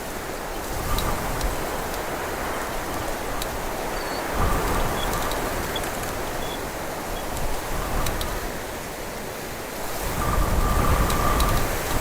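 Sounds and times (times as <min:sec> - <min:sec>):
wind through a bush: 0:00.0 - 0:12.0
low wind rumbles: 0:09.9 - 0:12.0.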